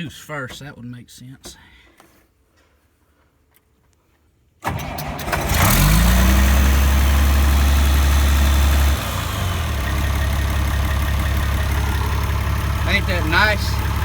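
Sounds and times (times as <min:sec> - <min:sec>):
diesel tractor engine running: 0:04.6 - 0:14.0
tractor starter cranking: 0:04.6 - 0:14.0.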